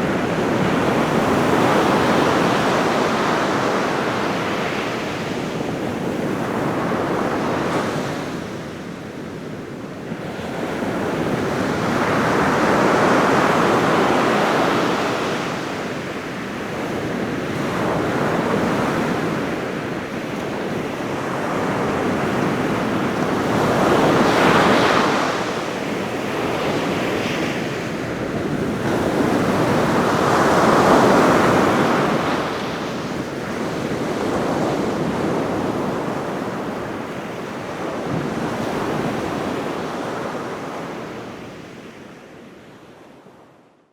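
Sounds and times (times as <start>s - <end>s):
ocean waves crashing: 28.7s - 37.0s.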